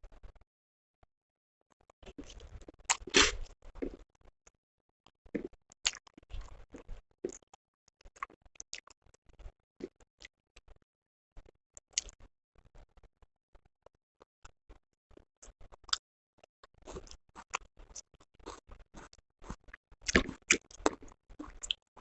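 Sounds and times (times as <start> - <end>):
person chewing: 2.2 - 4.0, 5.3 - 7.4, 16.7 - 22.0.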